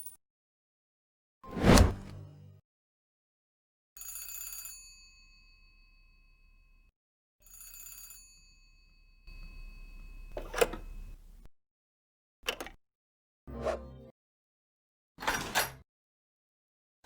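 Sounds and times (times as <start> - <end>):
old telephone bell ringing: 4.0 - 5.8, 7.5 - 10.9.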